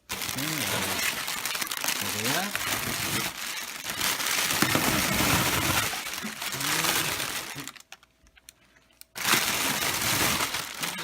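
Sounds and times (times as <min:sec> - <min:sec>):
packing material rustling: 0:00.0 - 0:08.1, 0:09.2 - 0:11.0.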